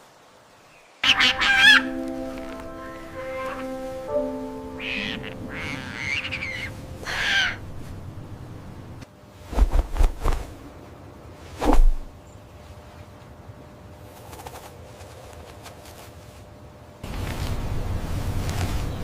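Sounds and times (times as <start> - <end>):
crow-like calls: 1.0 - 3.7, 4.6 - 7.9.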